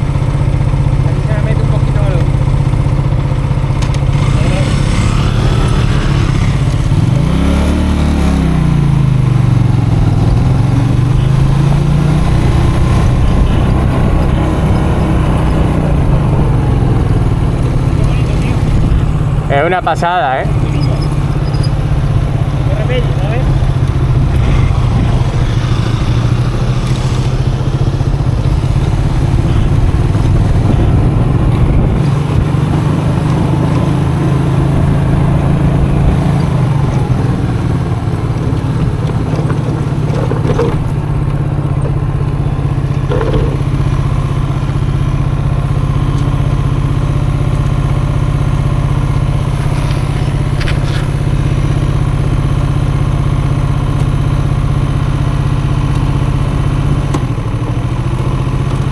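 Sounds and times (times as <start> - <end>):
motorcycle engine running: 0.0 - 58.9
knocks and rattles: 28.8 - 43.9.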